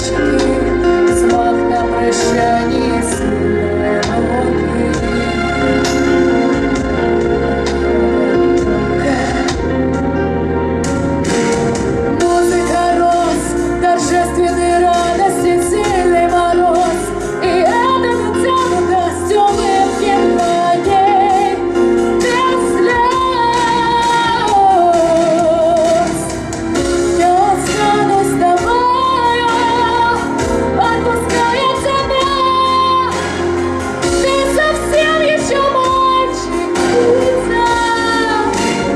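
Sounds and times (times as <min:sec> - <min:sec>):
woman singing a pop song: 0:00.0 - 0:06.7, 0:08.6 - 0:09.9, 0:12.0 - 0:38.9
instrumental accompaniment: 0:00.0 - 0:38.9.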